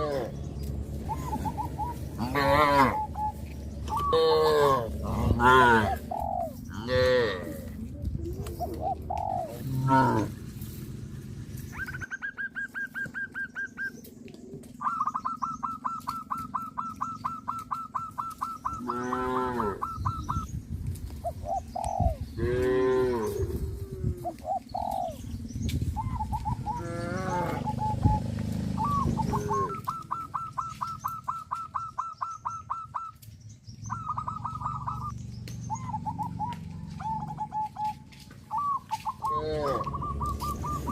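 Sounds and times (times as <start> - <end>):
cattle lowing: 0.0 - 12.0, 17.3 - 20.5, 21.6 - 31.0, 38.6 - 40.9
birds trilling: 0.0 - 40.9.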